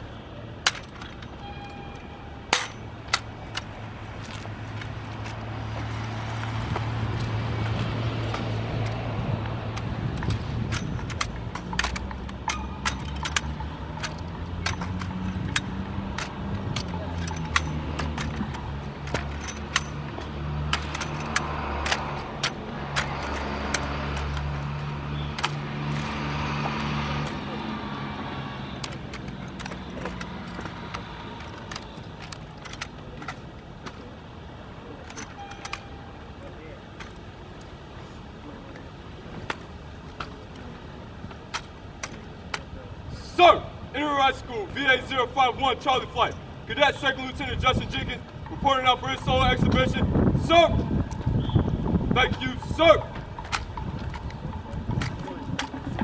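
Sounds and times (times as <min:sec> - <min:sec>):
rifle clacks and rattles: 0:00.6 - 0:01.4, 0:02.5 - 0:05.5, 0:08.2 - 0:27.5, 0:28.6 - 0:34.2, 0:34.9 - 0:36.0, 0:36.9 - 0:37.7, 0:39.4 - 0:42.8, 0:52.2 - 0:56.0.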